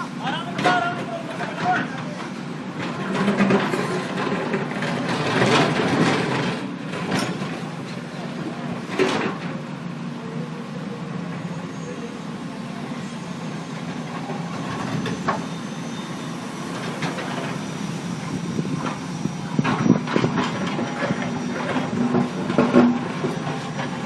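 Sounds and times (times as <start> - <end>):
diesel machinery running: 0.0 - 24.0
loud clanks and scraping knocks: 0.5 - 8.1, 8.8 - 9.6, 16.7 - 17.6, 19.6 - 24.0.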